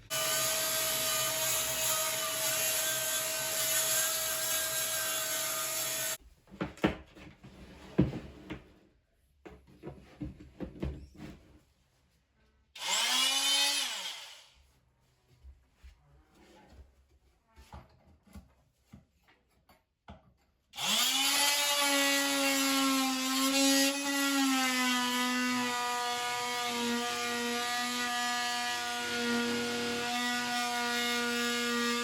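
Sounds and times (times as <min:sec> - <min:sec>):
oscillating multi-tool whining: 0:00.1 - 0:06.2.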